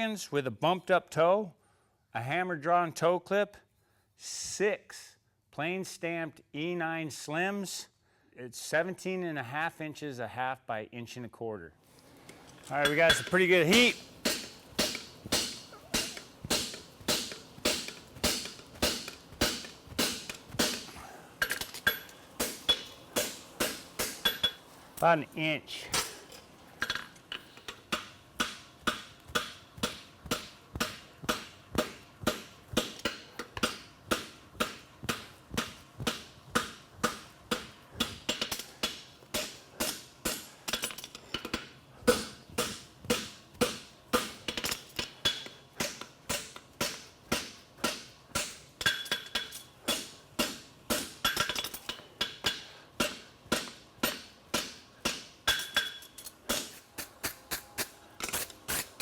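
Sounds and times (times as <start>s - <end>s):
hammer striking steel on anvil: 12.8s - 24.6s, 27.7s - 59.0s.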